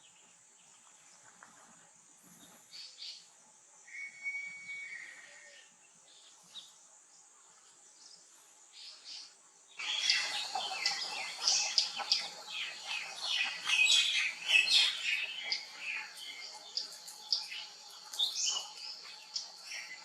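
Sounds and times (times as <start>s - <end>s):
held whistled bird note: 3.9s - 5.6s
birds calling: 9.8s - 20.0s
busy chatter of chirps: 9.8s - 20.0s.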